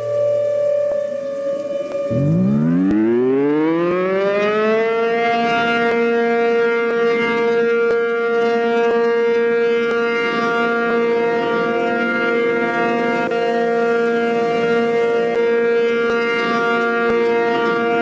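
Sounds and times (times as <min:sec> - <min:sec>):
tornado warning siren wailing: 0:00.0 - 0:18.0.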